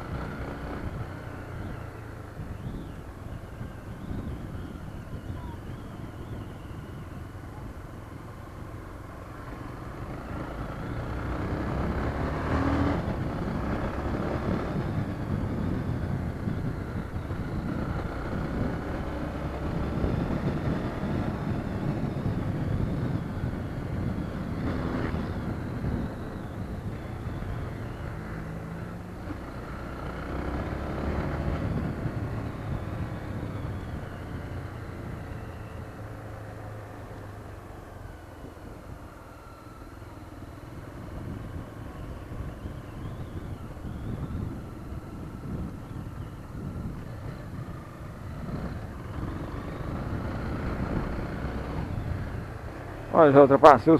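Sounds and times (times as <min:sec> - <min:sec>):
road noise: 0:00.0 - 0:53.9
motorcycle engine running: 0:12.9 - 0:39.2.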